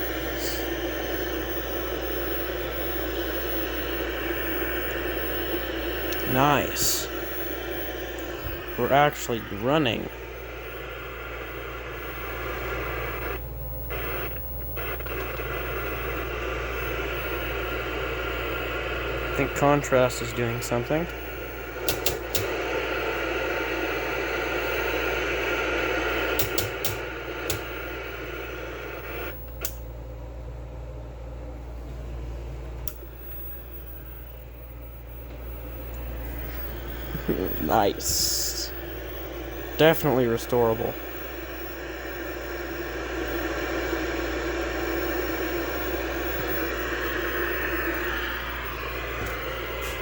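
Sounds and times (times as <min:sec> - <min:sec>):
television static hiss: 0:00.0 - 0:29.8, 0:32.9 - 0:50.0
steady low hum: 0:00.0 - 0:50.0
sharp clicks: 0:21.8 - 0:22.6, 0:26.3 - 0:27.7.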